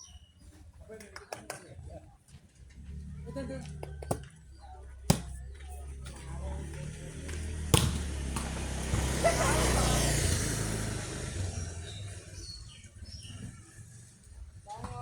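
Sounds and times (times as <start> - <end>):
engine humming: 2.5 - 15.0
vehicle passing: 2.6 - 14.4.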